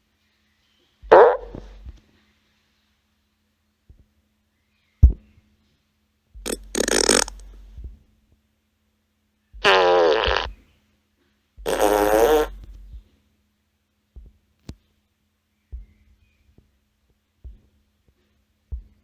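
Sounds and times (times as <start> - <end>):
fart sound effects: 1.1 - 1.7, 6.4 - 7.6, 9.6 - 10.6, 11.6 - 12.8.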